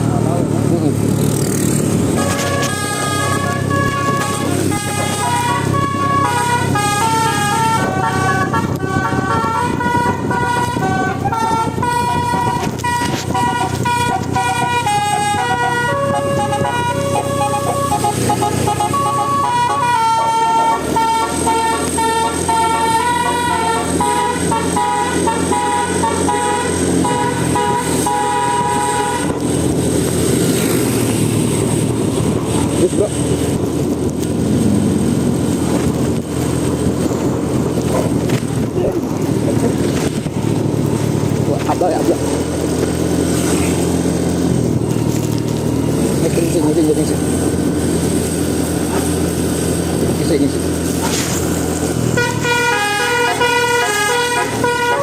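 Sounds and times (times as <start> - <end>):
bus engine running: 0.0 - 55.0
bus air horn melody: 2.1 - 29.6, 52.1 - 55.0.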